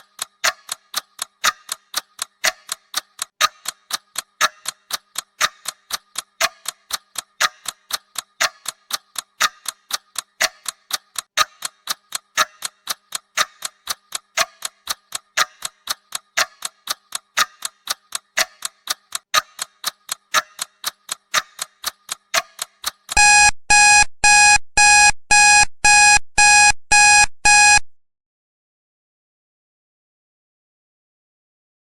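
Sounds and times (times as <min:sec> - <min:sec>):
timer clock ticking: 0:00.0 - 0:27.9
timer alarm beeping: 0:23.1 - 0:27.9.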